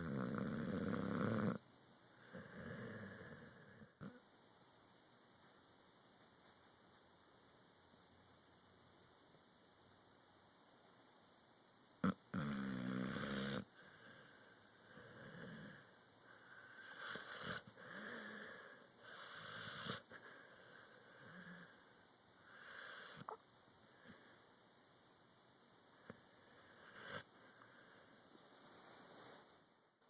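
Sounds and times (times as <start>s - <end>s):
dog snoring: 0.0s - 1.6s, 2.2s - 4.2s, 12.0s - 21.9s, 22.5s - 23.4s, 26.0s - 28.0s.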